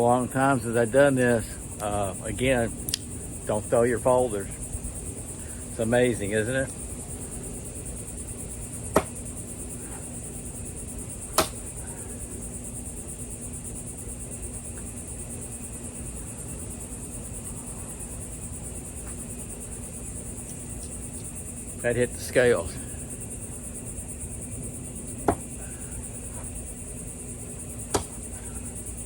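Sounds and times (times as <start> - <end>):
crickets chirping: 0.0 - 29.0
knives thunking into wood: 8.9 - 9.2, 11.3 - 11.6, 25.2 - 25.5, 27.9 - 28.2.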